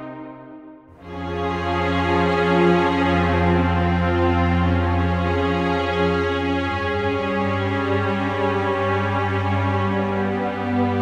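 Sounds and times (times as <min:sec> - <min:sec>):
layered instrumental chords: 0:00.0 - 0:05.0.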